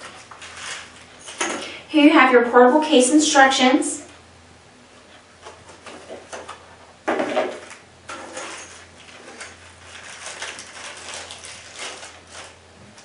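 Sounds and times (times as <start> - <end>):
items rustling and knocking: 0.0 - 1.8, 5.0 - 13.0.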